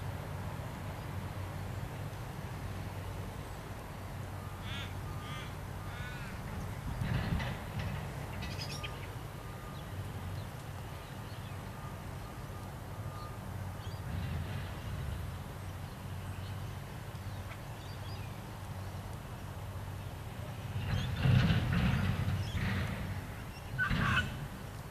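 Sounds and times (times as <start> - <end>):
excavator diesel engine humming: 0.0 - 16.9
birds calling: 4.3 - 14.2, 22.1 - 24.4.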